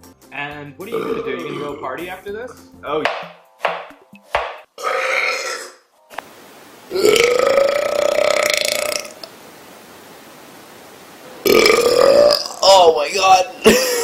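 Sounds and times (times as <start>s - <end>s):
person burping: 0.9s - 1.9s, 4.8s - 5.8s, 6.9s - 9.3s, 11.4s - 12.7s.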